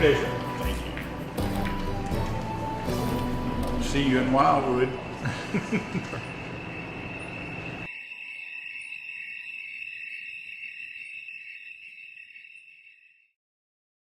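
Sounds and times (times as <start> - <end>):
insects chirring: 2.2 - 13.4.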